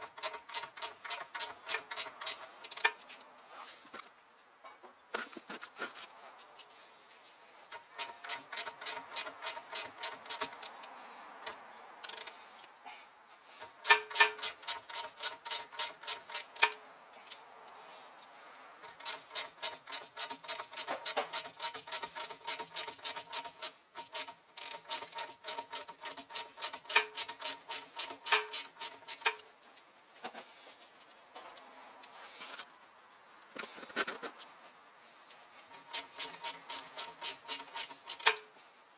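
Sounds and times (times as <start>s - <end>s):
rapid regular clicking rattle: 0.0s - 3.2s, 7.7s - 12.4s, 13.6s - 16.8s, 18.8s - 29.4s, 35.7s - 38.4s.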